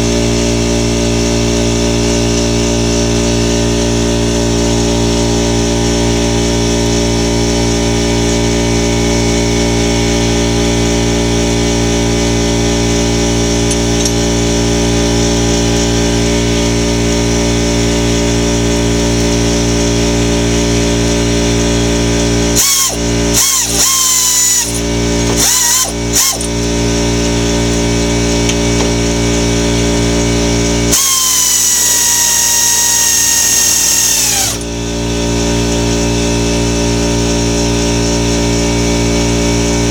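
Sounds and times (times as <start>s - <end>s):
air compressor motor humming: 0.0s - 39.9s
air tool hissing and whining: 20.2s - 36.1s.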